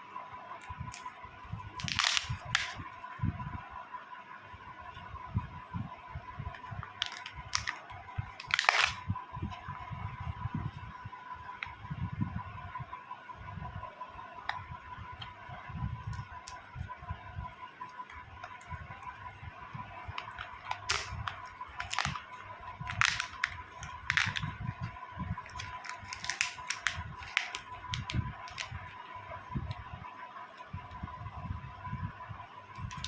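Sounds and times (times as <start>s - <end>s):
faint high-pitched hum: 0.0s - 33.0s
plastic clicking and crackling: 1.8s - 2.8s, 6.5s - 9.0s, 20.1s - 29.0s, 32.8s - 33.0s.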